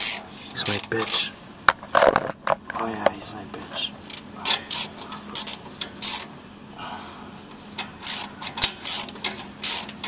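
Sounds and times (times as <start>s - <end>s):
socket ratchet clicking: 8.0s - 10.0s.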